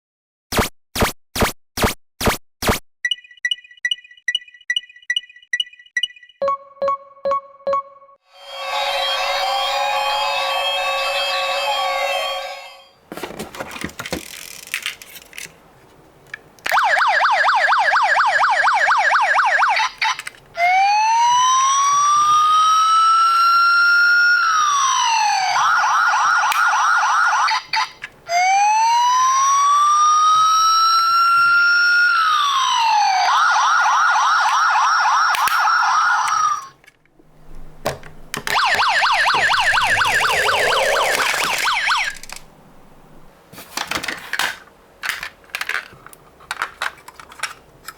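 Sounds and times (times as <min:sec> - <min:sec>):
police siren wailing and yelping: 0:16.7 - 0:36.8, 0:38.5 - 0:42.4.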